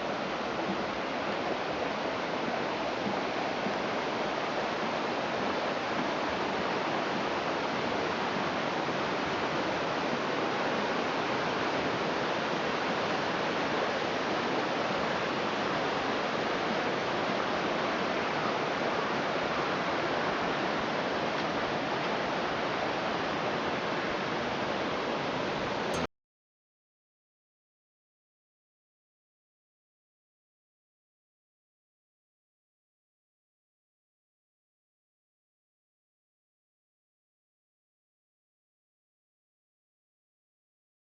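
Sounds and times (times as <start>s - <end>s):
stream rushing over rocks: 0.0s - 26.1s.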